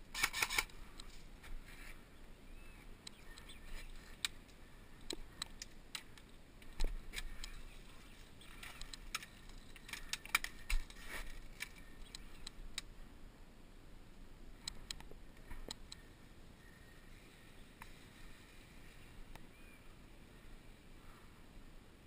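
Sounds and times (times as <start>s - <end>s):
faint sharp clicks: 3.0s - 7.6s, 11.6s - 12.9s, 14.6s - 16.1s.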